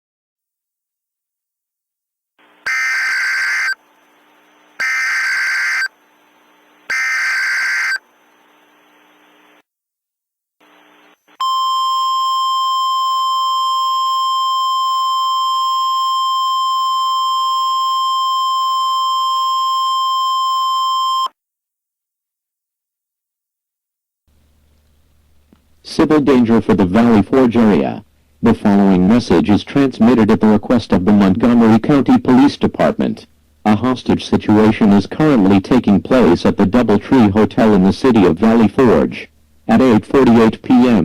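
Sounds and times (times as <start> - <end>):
data bursts: 2.6 - 3.8, 4.8 - 6.0, 6.9 - 8.1
piercing attention tone: 2.7 - 3.8, 4.8 - 5.9, 6.9 - 8.0.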